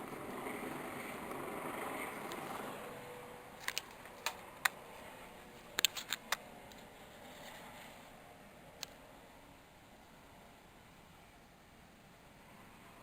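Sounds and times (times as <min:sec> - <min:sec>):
helicopter passing: 0:00.0 - 0:05.8.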